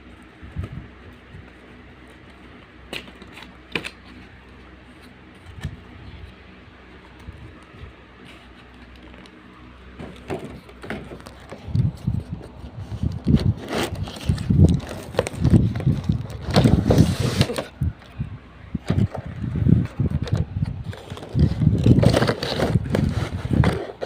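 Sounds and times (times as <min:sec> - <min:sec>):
toy packaging being opened: 0:13.6 - 0:17.8, 0:20.2 - 0:24.0.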